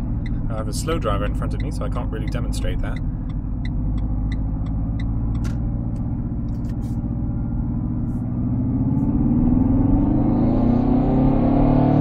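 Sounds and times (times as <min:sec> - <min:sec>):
diesel engine drone: 0:00.0 - 0:12.0
simulated engine sound through speakers: 0:00.0 - 0:12.0.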